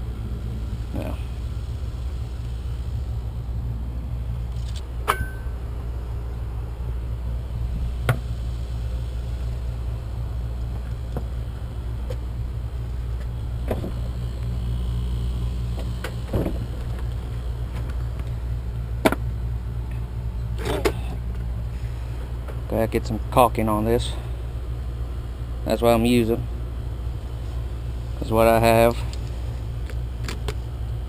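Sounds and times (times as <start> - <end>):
low motor rumble: 0.0 - 31.0
sharp clicks and knocks: 8.0 - 8.3, 12.9 - 14.5, 15.7 - 18.4, 19.0 - 19.3.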